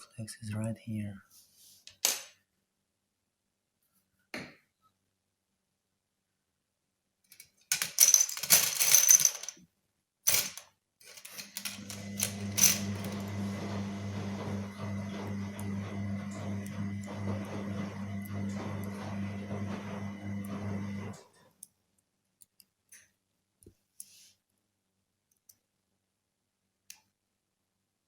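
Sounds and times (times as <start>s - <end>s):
small tools clicking and clattering: 7.3s - 9.6s, 10.3s - 12.9s.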